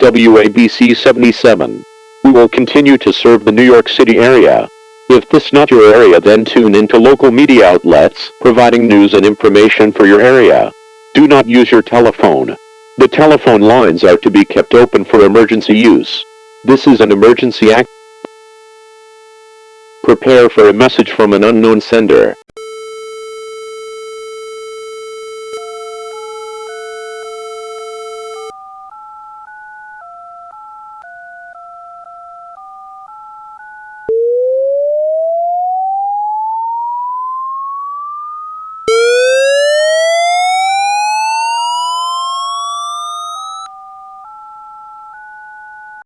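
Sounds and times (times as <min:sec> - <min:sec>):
buzzy steady tone: 0:00.0 - 0:20.8, 0:22.1 - 0:28.5, 0:34.1 - 0:43.7
beeping dialing tones: 0:22.6 - 0:29.0, 0:38.9 - 0:44.4.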